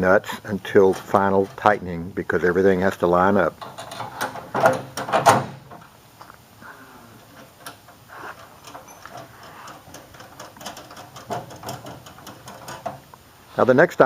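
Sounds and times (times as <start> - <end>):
car parts clicking and tapping: 8.6 - 13.2.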